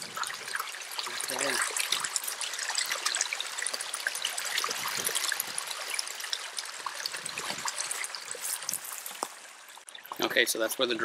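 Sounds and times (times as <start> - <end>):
water trickling and splashing: 0.0 - 11.0.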